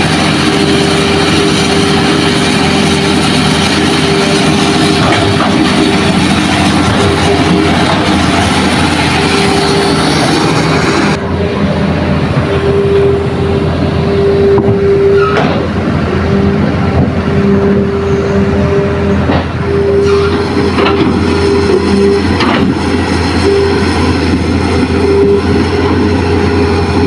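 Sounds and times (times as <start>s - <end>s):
engine whine: 0.0s - 27.0s
excavator diesel engine drone: 0.0s - 27.0s
sharp knocks and clanks: 20.7s - 21.2s, 22.3s - 22.8s.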